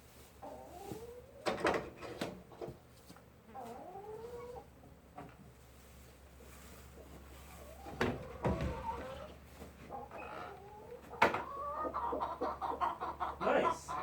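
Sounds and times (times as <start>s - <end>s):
chickens clucking: 0.3s - 14.0s.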